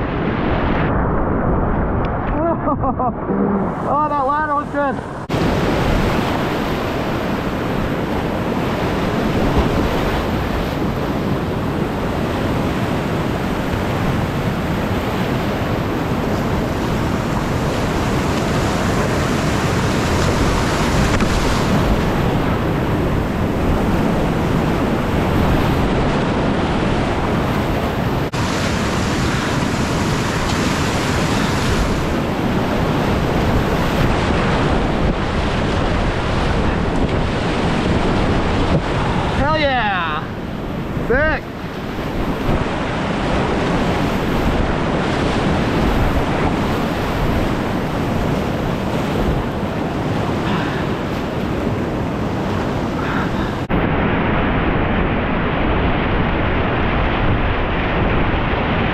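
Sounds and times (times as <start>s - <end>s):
wind buffeting microphone: 0.0s - 58.9s
river rapids rushing: 27.2s - 34.8s.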